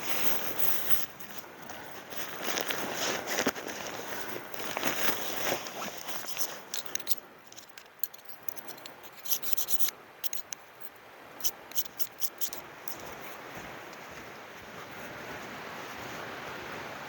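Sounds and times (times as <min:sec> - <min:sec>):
camping gear rustling: 0:00.0 - 0:16.4
short clicks and scrapes: 0:05.2 - 0:13.0.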